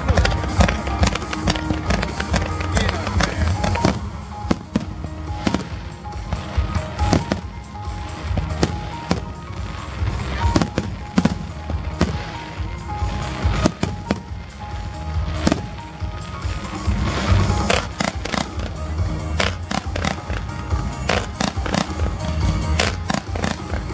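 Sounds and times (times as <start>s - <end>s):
fireworks bursting: 0.0s - 23.9s
music playing: 0.0s - 23.9s.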